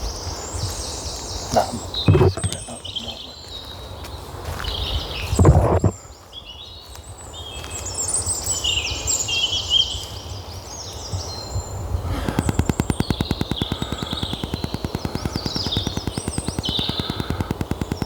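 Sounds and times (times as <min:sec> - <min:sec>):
songbirds chirping: 0:00.0 - 0:18.0
fast even pulsing: 0:01.5 - 0:03.5, 0:05.4 - 0:05.9, 0:12.0 - 0:18.0.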